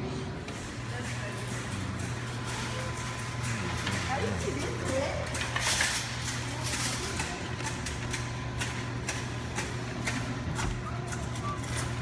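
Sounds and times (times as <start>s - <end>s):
low machine hum: 0.0s - 12.0s.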